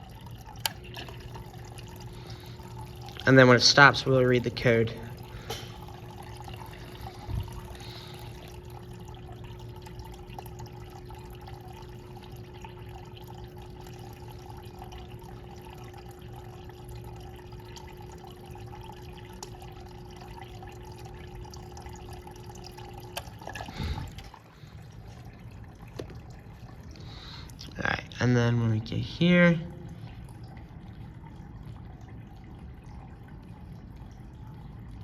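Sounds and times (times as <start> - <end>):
electric water pump humming: 0.0 - 35.0
water flowing: 0.0 - 35.0.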